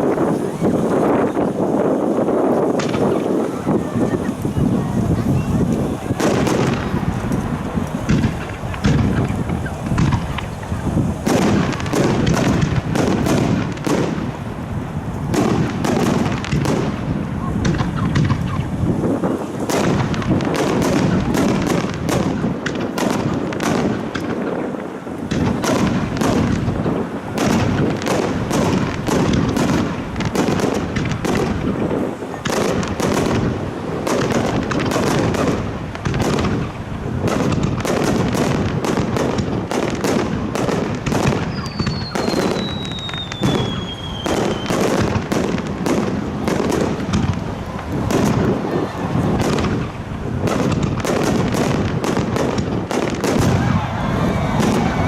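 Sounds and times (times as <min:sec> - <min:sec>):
fireworks bursts and crackling: 0:00.0 - 0:55.0
firework whistle falling in pitch: 0:41.5 - 0:44.8.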